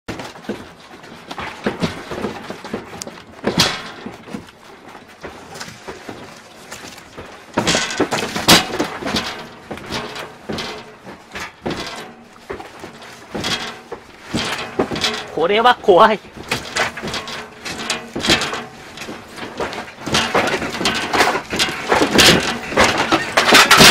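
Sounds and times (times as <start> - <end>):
falling objects crashing: 0.1 - 4.5, 5.2 - 23.9
objects rattling and clattering: 0.1 - 23.9.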